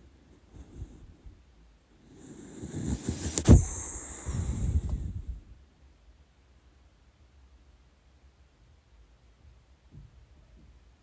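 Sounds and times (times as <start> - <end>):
dog snoring: 2.0 - 4.8.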